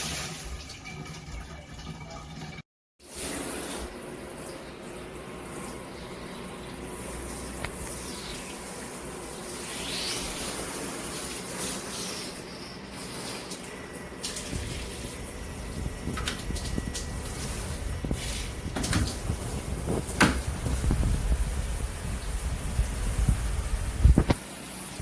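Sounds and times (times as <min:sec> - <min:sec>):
water spraying from shower head: 0:06.8 - 0:25.0.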